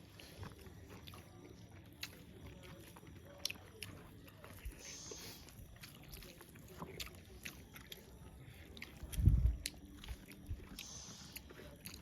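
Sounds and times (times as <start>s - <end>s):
chewing and biting: 0.0s - 12.0s.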